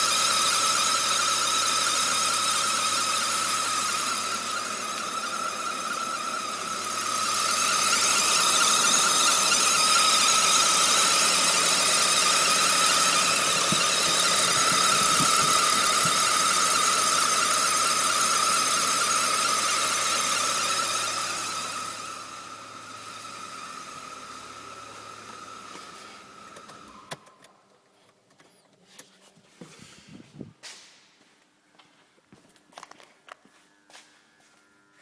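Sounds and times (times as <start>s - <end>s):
car high-pitched whine: 0.0s - 27.5s.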